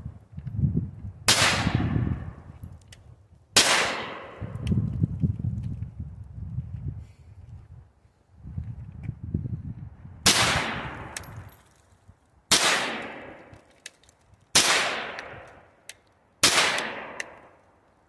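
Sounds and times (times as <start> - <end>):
gunshots ringing out: 1.3 - 2.3, 3.6 - 4.5, 10.2 - 11.3, 12.5 - 13.6, 14.5 - 15.5, 16.4 - 17.6.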